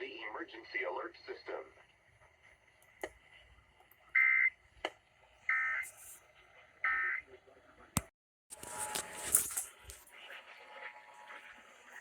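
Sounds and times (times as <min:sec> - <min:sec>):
noisy broadcast audio: 0:00.0 - 0:03.6, 0:05.6 - 0:10.8.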